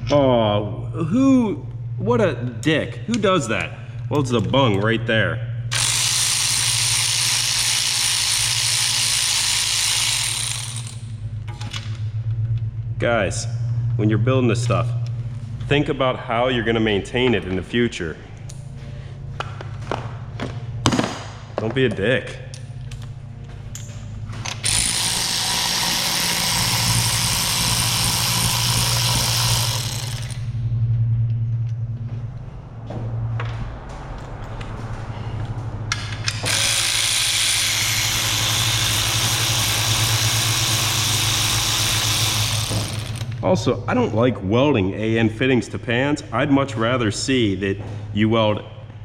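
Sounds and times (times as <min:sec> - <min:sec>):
low hum: 0:00.0 - 0:49.0.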